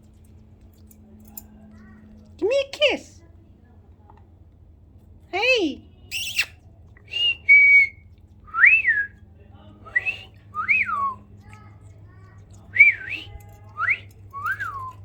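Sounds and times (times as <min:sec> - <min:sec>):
bird whistling: 0:06.1 - 0:09.1, 0:09.9 - 0:11.2, 0:12.7 - 0:15.0.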